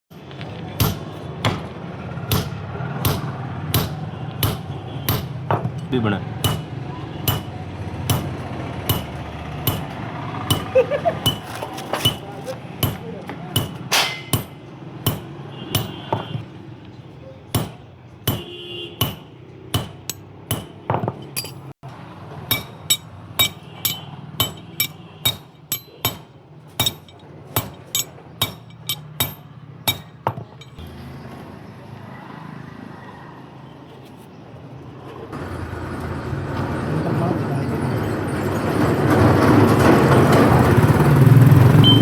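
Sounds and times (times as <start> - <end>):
hammer striking steel: 0.1 - 1.7, 2.3 - 16.4, 17.5 - 21.7, 22.5 - 30.8
steady background noise: 0.1 - 32.2.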